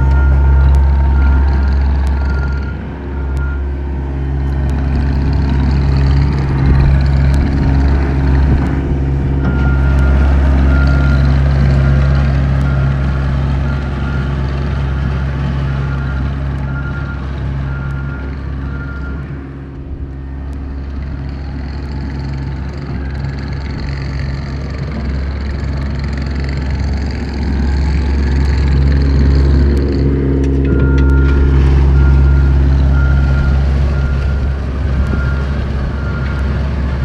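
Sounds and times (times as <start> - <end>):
backup alarm beeping: 0.0 - 3.8, 30.0 - 36.5
diesel engine running: 0.0 - 37.0.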